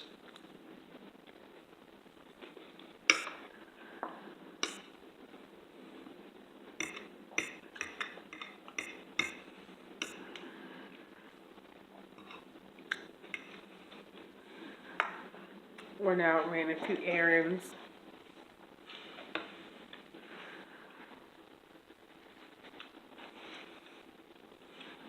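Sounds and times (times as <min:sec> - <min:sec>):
faint eating sounds: 0:00.0 - 0:25.0
cutlery clinking on dishes: 0:03.1 - 0:03.4, 0:04.6 - 0:04.8, 0:06.8 - 0:10.2.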